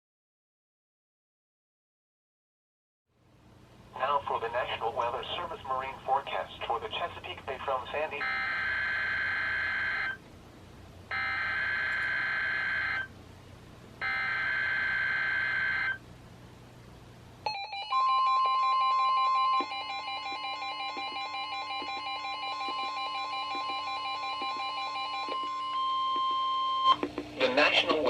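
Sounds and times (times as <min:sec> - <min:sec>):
pulsing alarm beeps: 0:08.2 - 0:10.2, 0:11.1 - 0:13.1, 0:17.5 - 0:27.0.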